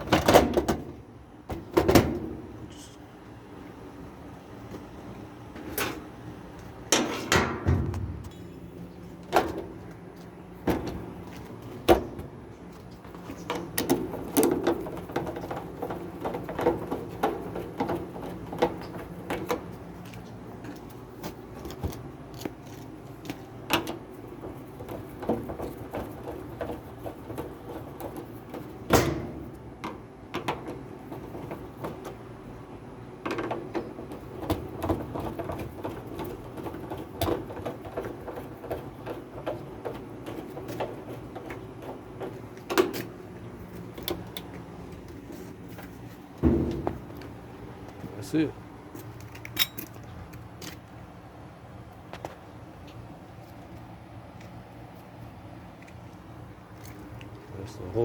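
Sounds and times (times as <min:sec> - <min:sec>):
metal panels clunking and knocking: 0:00.0 - 0:02.7, 0:06.8 - 0:20.0, 0:23.0 - 0:48.4.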